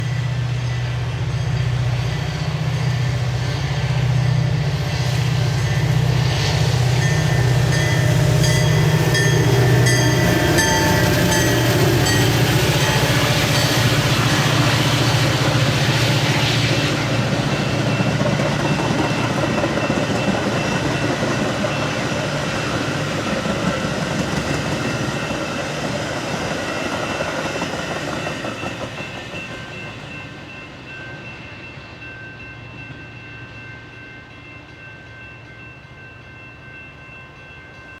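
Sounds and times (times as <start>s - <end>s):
locomotive engine humming: 0.0s - 34.1s
train wheels clicking on rails: 4.6s - 31.2s.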